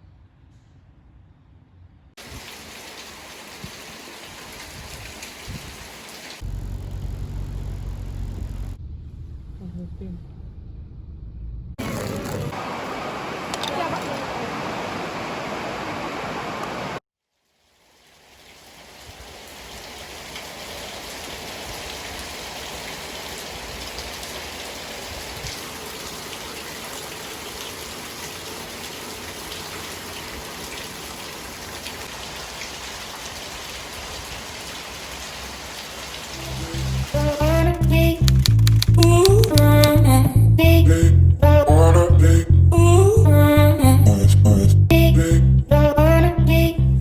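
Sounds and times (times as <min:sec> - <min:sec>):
steady rain falling: 0:02.2 - 0:07.8, 0:11.8 - 0:40.0
music: 0:36.4 - 0:47.0.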